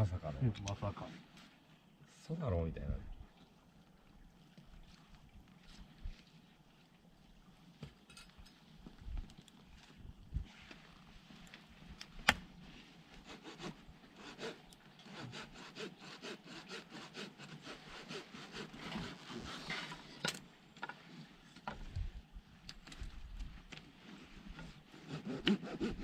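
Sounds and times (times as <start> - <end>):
hand saw cutting wood: 13.2 - 20.4, 24.6 - 26.0.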